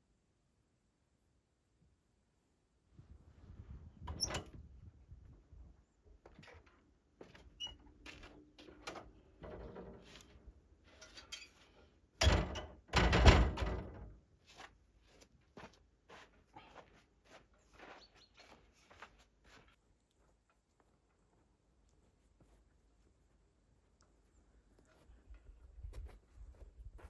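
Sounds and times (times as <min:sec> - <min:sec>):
clunk with scrape: 0:08.1 - 0:12.5.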